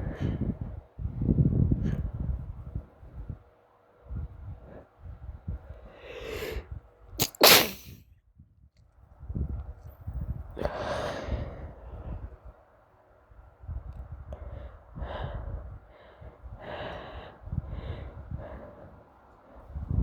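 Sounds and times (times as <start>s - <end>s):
person sneezing: 7.2s - 8.0s.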